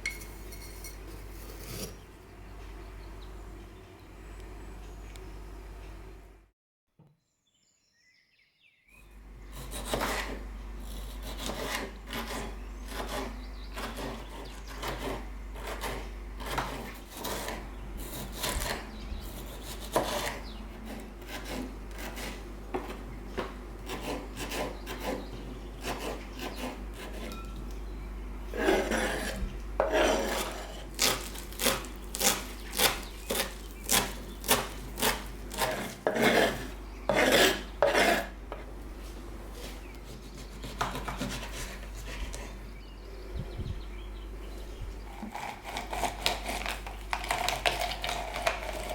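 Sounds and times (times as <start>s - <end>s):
rasping scraping strokes: 0.0s - 2.0s, 28.6s - 38.4s.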